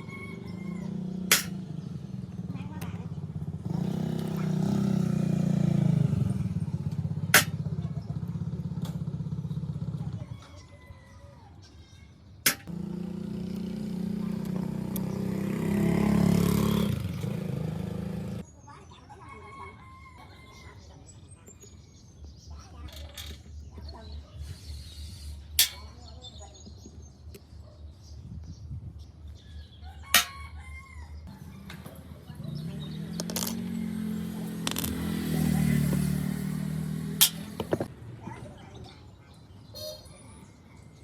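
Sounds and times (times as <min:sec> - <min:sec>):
rooster crowing: 0:00.0 - 0:01.1, 0:29.8 - 0:32.0.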